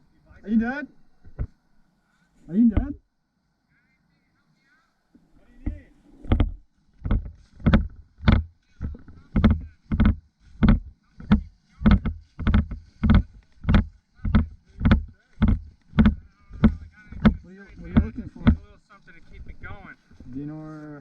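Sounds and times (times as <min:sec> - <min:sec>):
footsteps walking: 0:05.4 - 0:21.0.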